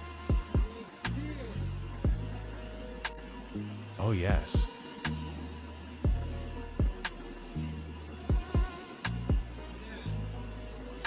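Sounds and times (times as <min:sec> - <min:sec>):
ticking hi-hats: 0:00.0 - 0:11.0
kick drum hits: 0:00.3 - 0:00.8, 0:04.3 - 0:04.7
deep bass line: 0:01.6 - 0:02.5.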